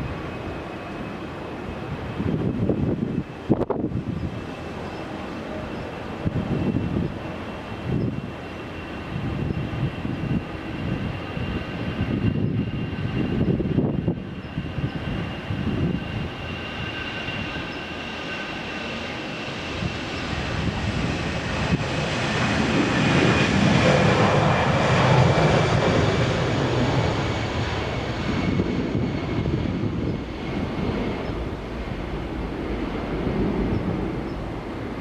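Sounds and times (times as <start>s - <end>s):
jet engines whining: 0.0s - 35.0s
low rumble: 19.8s - 35.0s.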